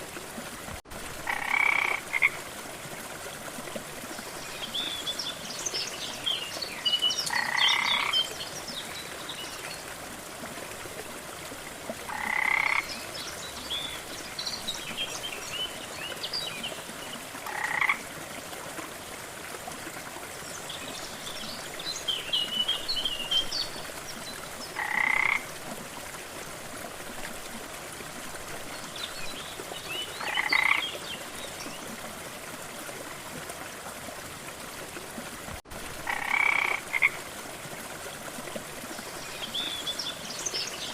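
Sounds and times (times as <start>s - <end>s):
rushing water: 0.0s - 40.9s
frog croaking: 1.3s - 2.4s, 7.3s - 8.2s, 12.1s - 12.9s, 17.4s - 18.0s, 24.8s - 25.4s, 30.2s - 30.8s, 36.1s - 37.2s.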